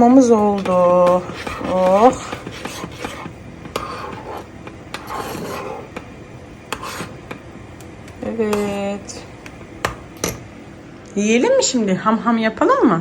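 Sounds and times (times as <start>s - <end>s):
utensil scraping a dish: 0.2s - 6.0s, 6.7s - 7.4s, 8.4s - 9.1s.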